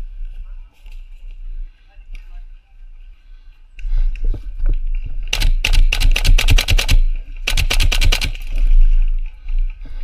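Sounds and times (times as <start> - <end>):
airsoft rifle shots: 5.3 - 8.7.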